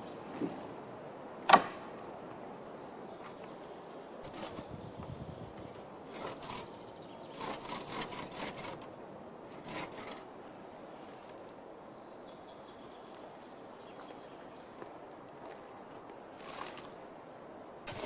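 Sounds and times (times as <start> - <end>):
rasping scraping wood: 4.3 - 4.7, 6.1 - 8.9, 9.5 - 10.3.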